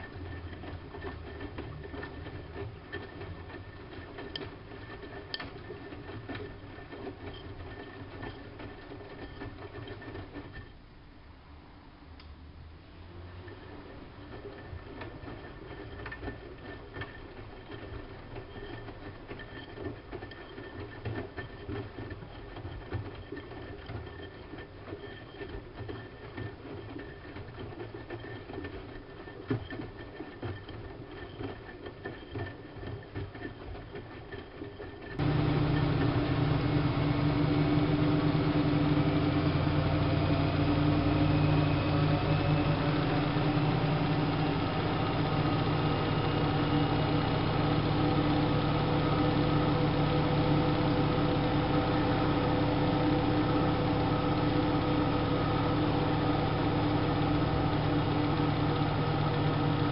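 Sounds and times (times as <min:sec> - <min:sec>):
washing machine running: 0:00.0 - 0:10.7, 0:13.0 - 0:59.9
light irregular ticks and knocks: 0:00.0 - 0:10.8, 0:13.5 - 0:36.8
loud steady hum: 0:35.2 - 0:59.9.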